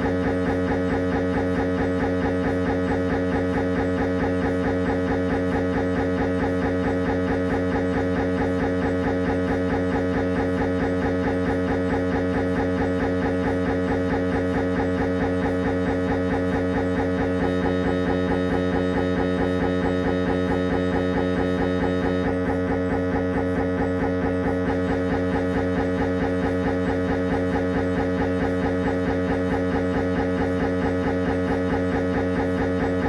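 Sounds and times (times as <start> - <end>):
mri scanner pulsing drone: 0.0 - 33.0.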